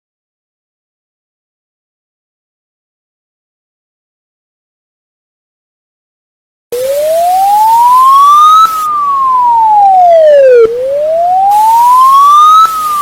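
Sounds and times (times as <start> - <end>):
siren wailing: 6.8 - 13.0.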